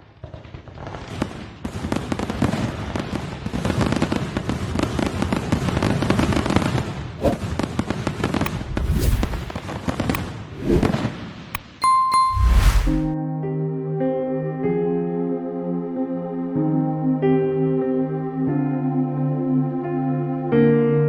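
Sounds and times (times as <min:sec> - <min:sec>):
fireworks crackling and popping: 0:07.3 - 0:10.1.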